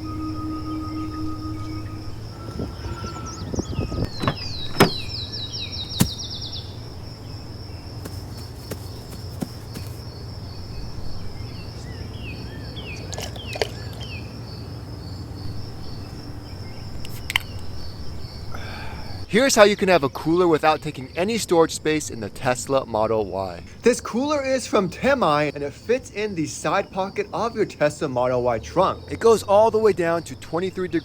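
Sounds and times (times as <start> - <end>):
low hum: 0.0 - 5.4
falling bird-like chirps: 0.0 - 6.8
pulsing insect trill: 0.0 - 12.9.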